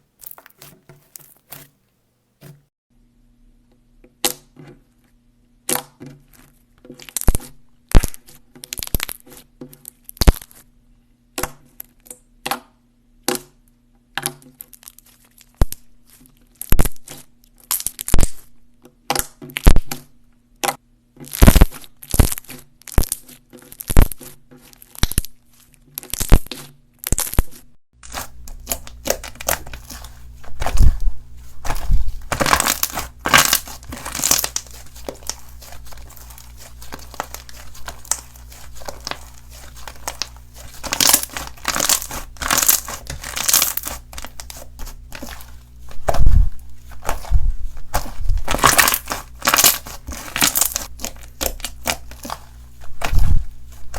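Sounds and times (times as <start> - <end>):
slime crackling when squeezed: 31.6 - 53.9.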